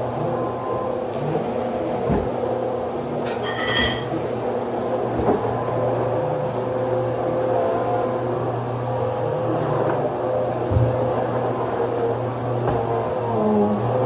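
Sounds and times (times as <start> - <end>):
vacuum cleaner motor running: 0.0 - 14.0
metallic clink: 3.3 - 4.1.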